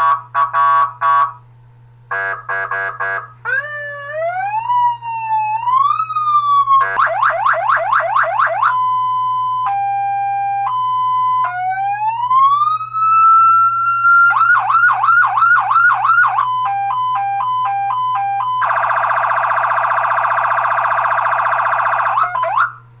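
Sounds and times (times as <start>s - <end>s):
buzzing horn tone: 0.0s - 1.4s, 2.1s - 3.4s, 6.7s - 7.3s
fire truck electronic siren: 0.0s - 1.4s, 2.1s - 22.9s.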